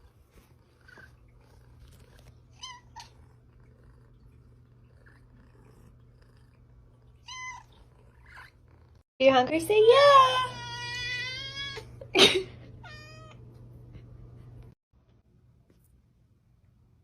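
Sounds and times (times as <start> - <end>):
cat meowing: 7.2 - 7.8.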